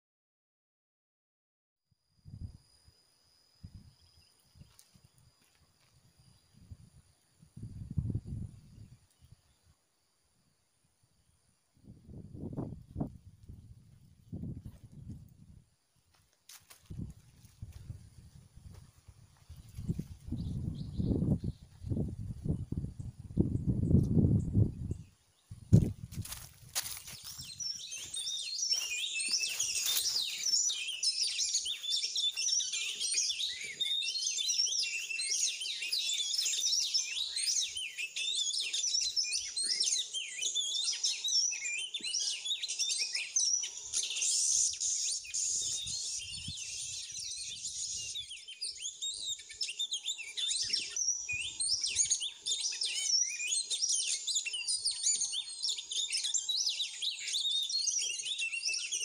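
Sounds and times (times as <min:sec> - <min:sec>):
bird chirps and whistles: 0:27.2 - 0:59.0.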